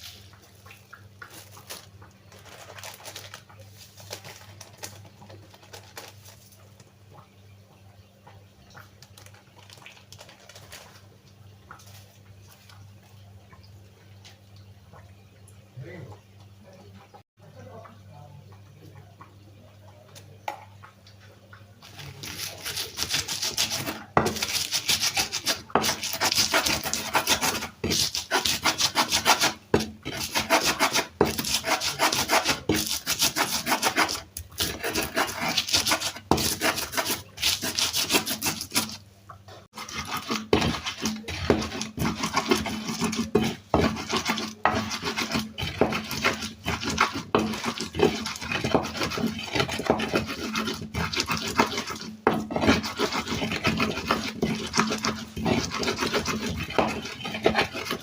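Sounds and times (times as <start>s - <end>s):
pestle grinding in stone mortar: 21.8s - 39.0s, 39.7s - 58.0s.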